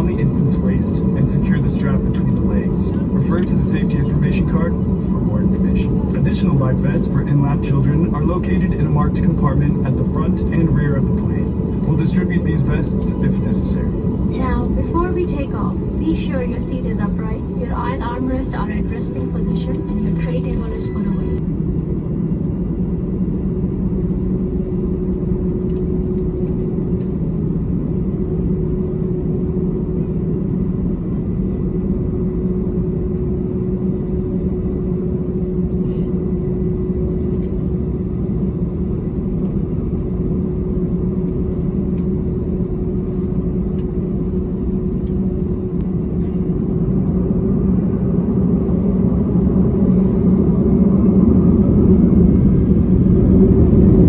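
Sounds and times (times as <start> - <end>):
jet engines spooling up: 0.0 - 24.2, 43.2 - 54.0
jet cabin rumble: 0.0 - 54.0
steady hum: 0.0 - 54.0.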